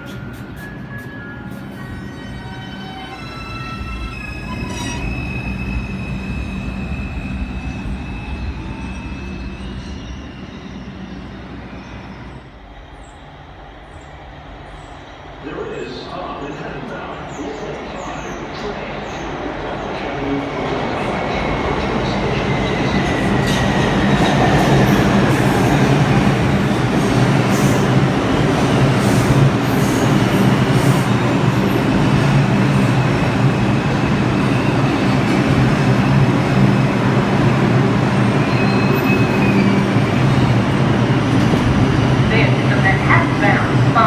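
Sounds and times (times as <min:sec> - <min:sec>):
subway train rumbling on rails: 0:00.0 - 0:44.0
high wheel squeal: 0:00.1 - 0:12.3, 0:38.3 - 0:40.6.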